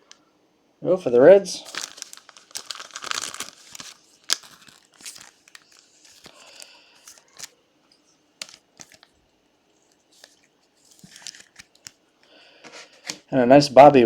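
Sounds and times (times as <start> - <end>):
plastic crinkling: 1.6 - 12.0
cards being flipped through: 1.7 - 7.6, 8.4 - 9.1, 9.8 - 12.0.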